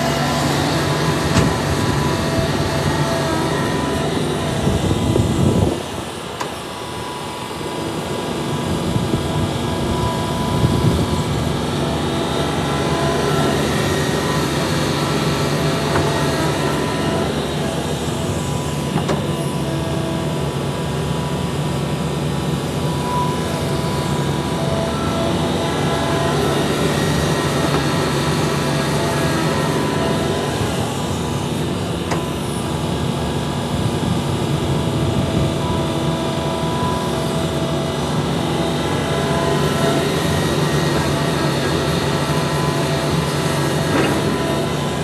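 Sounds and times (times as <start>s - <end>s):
excavator diesel engine running: 0.0s - 45.0s
whining tones: 0.0s - 45.0s
brief knocks: 1.2s - 2.0s.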